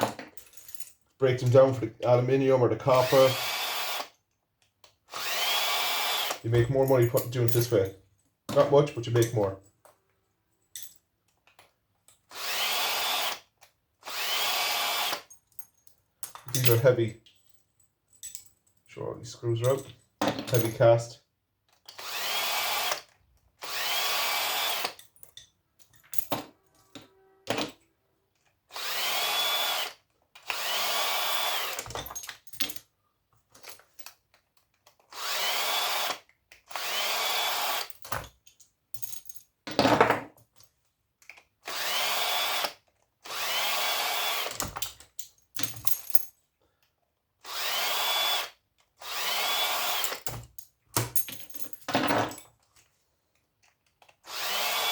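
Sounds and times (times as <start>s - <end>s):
cordless drill driving screws: 3.0s - 4.2s, 5.1s - 6.4s, 12.3s - 15.3s, 21.8s - 25.0s, 28.7s - 32.0s, 35.0s - 38.0s, 41.6s - 44.7s, 47.4s - 50.4s, 54.2s - 54.9s
metal parts clinking: 6.4s - 7.9s, 15.3s - 18.8s, 19.6s - 21.0s, 44.6s - 46.4s, 50.1s - 52.7s.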